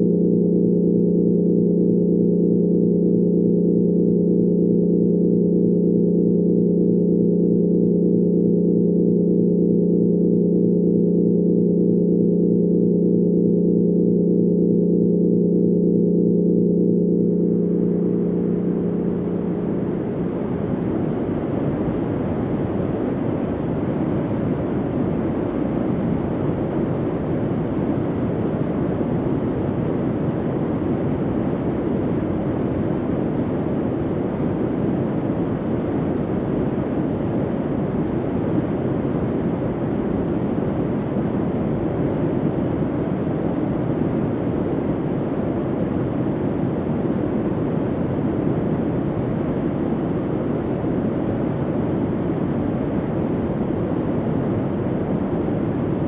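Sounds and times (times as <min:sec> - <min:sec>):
gong-like drone: 0:00.0 - 0:21.3
low rumbling hum: 0:00.0 - 0:56.0.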